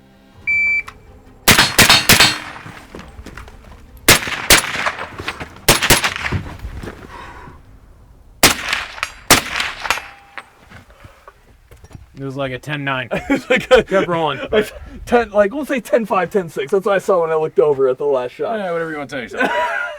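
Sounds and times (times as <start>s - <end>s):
gunshots with short echo: 1.5s - 2.9s, 4.1s - 6.6s, 8.4s - 10.1s.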